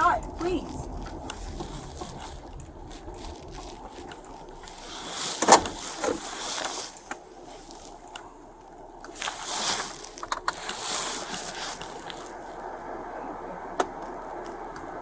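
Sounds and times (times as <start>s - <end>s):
road noise inside moving car: 0.0s - 15.0s
rustling burst: 9.1s - 12.7s.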